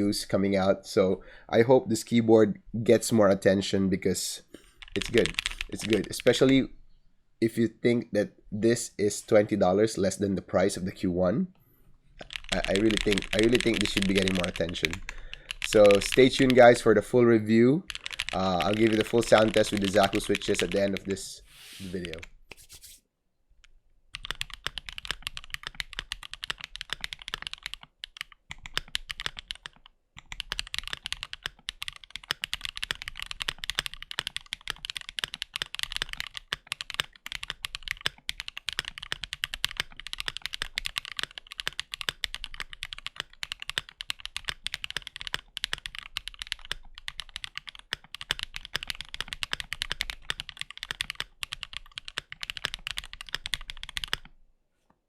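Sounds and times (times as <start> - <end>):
mechanical keyboard typing: 4.8 - 6.6, 12.2 - 17.1, 17.9 - 21.2, 21.9 - 22.3, 24.1 - 54.3.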